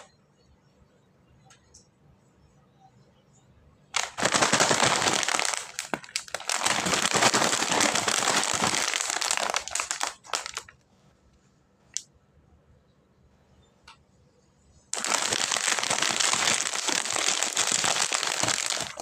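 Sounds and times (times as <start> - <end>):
snack packaging crinkling: 4.0 - 10.7, 14.9 - 19.0.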